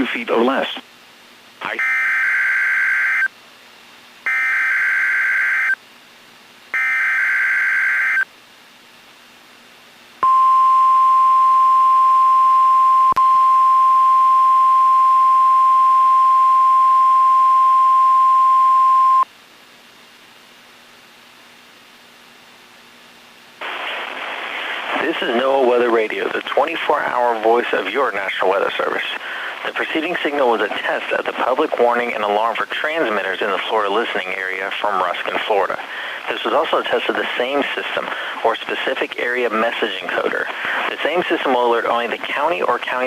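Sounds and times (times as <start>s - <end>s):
steady warning alarm tone: 1.7s - 3.3s, 4.3s - 5.8s, 6.8s - 8.2s.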